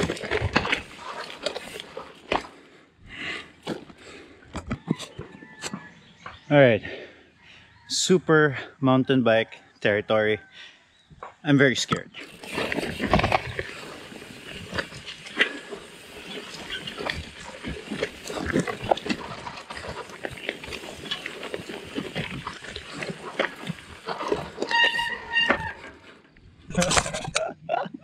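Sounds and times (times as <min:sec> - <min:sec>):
bicycle rattling on gravel trail: 0:00.0 - 0:04.3, 0:12.2 - 0:27.2
bicycle brakes squealing: 0:12.2 - 0:26.1.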